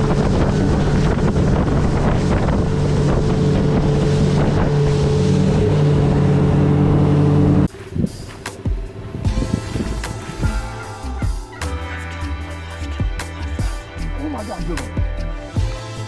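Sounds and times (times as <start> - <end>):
outboard motor running: 0.0 - 7.7
wind buffeting microphone: 0.0 - 8.2, 8.8 - 10.4.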